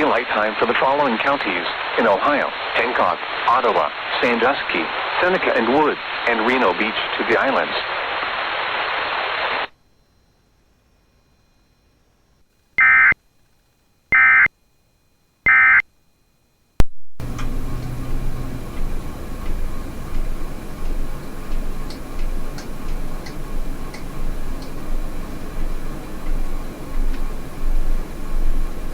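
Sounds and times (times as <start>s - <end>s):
noisy hiss and rumble: 0.0s - 28.9s
digital data tone bursts: 12.8s - 13.2s, 14.1s - 14.5s, 15.5s - 15.8s.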